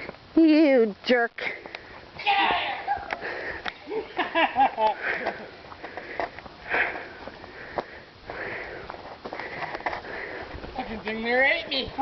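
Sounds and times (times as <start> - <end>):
person breathing: 3.1 - 3.8, 4.9 - 10.8.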